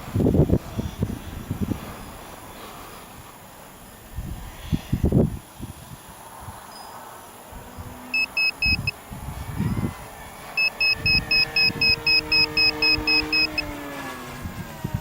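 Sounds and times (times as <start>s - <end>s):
faint motor drone: 0.0s - 15.0s
wind buffeting microphone: 0.0s - 15.0s
rapid electronic beeping: 8.1s - 9.0s, 10.6s - 13.7s.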